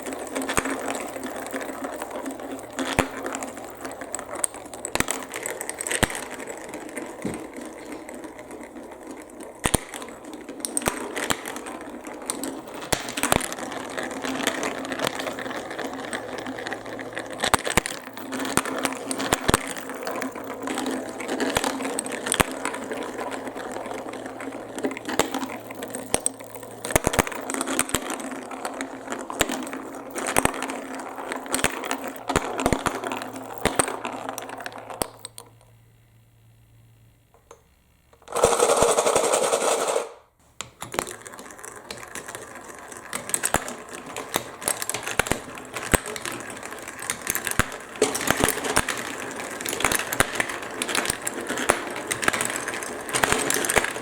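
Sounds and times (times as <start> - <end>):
marbles clicking on plastic run: 0.0 - 35.6, 38.2 - 54.0.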